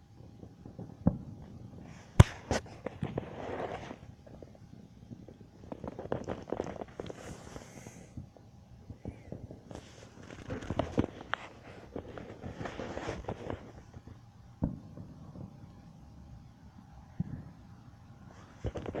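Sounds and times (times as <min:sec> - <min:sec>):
distant fireworks crackling pops: 0:00.0 - 0:19.0
sharp firework bang: 0:02.2 - 0:02.8.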